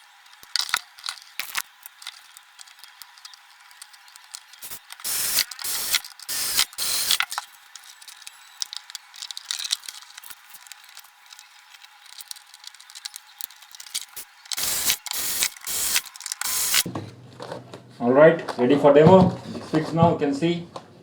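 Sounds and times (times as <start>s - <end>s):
hissing rustle: 0.3s - 16.9s
small clicks and knocks: 0.3s - 16.9s.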